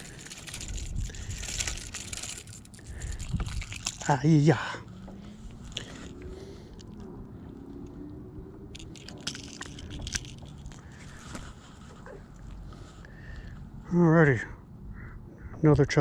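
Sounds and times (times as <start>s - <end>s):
fishing gear clicking and scraping: 0.0s - 8.0s, 8.6s - 12.7s.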